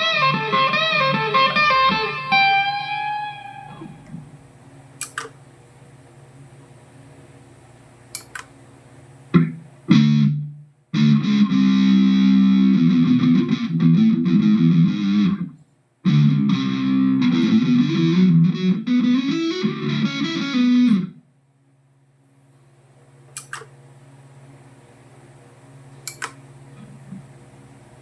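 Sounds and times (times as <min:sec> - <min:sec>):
electric guitar playing: 0:00.0 - 0:04.3, 0:09.4 - 0:21.2.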